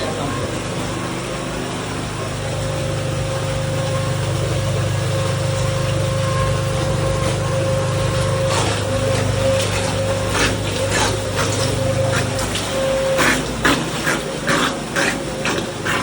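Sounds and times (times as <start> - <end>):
small engine running: 0.0 - 16.0
sharp knocks or splashes: 6.8 - 16.0.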